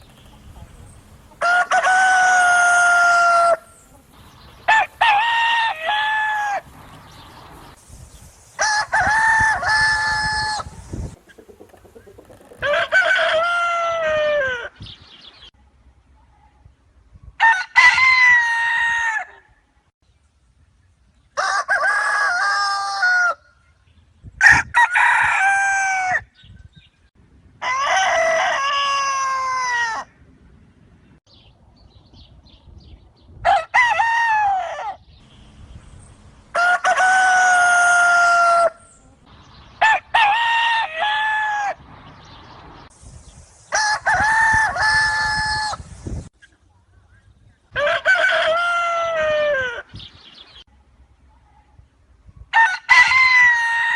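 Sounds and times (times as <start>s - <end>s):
rooster crowing loudly: 1.4s - 3.8s, 4.7s - 6.7s, 8.6s - 10.7s, 12.6s - 14.8s, 17.4s - 19.4s, 21.4s - 23.4s, 24.4s - 26.3s, 27.6s - 30.1s, 33.4s - 35.0s, 36.5s - 38.8s, 39.8s - 41.8s, 43.7s - 45.8s, 47.8s - 49.9s, 52.5s - 53.9s.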